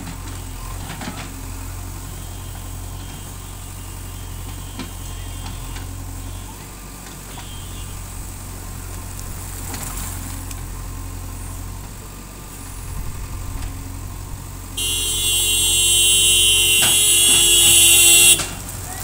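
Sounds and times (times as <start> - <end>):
diesel engine running: 0.0 - 19.0
loud high-pitched horn: 14.8 - 18.6.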